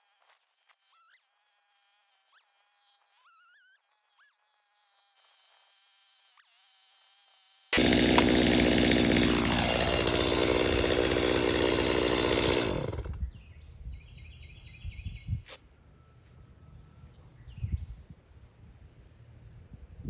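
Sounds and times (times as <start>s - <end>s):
chainsaw running: 7.8s - 13.3s.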